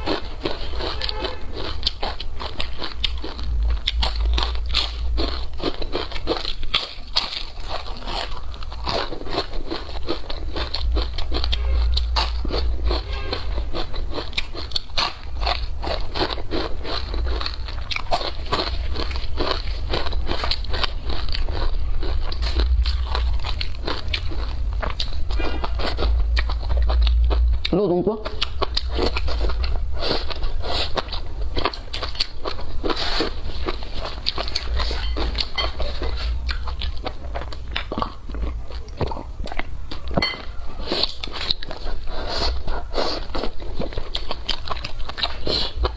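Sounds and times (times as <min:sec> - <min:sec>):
low rumble: 0:00.0 - 0:06.6, 0:09.5 - 0:14.6, 0:16.7 - 0:39.9
crunchy chewing of crisp food: 0:00.0 - 0:45.9.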